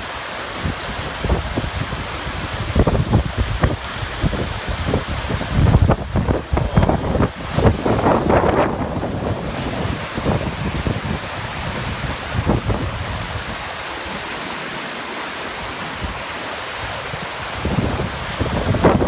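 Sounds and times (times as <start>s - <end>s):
wind buffeting microphone: 0.6s - 14.3s, 15.6s - 19.0s.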